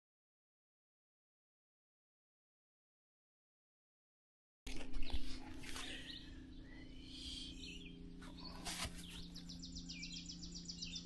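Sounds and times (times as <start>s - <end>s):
small birds chirping: 4.7s - 11.0s
steady low hum: 4.7s - 11.0s.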